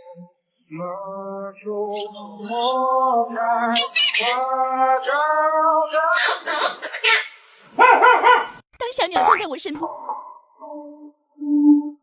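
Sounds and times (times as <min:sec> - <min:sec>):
person singing wavering notes: 0:00.0 - 0:00.3, 0:09.9 - 0:12.0.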